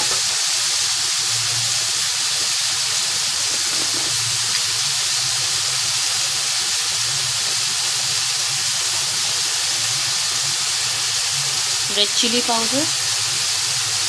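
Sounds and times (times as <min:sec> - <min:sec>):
vegetables sizzling in oil: 0:00.0 - 0:14.0.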